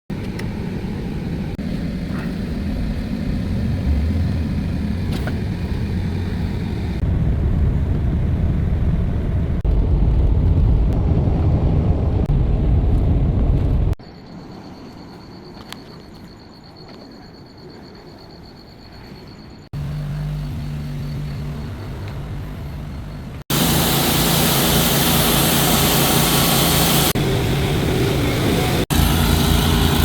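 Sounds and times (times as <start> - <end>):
high whine: 0.1 - 30.0
pressure washer rumbling: 19.8 - 30.0.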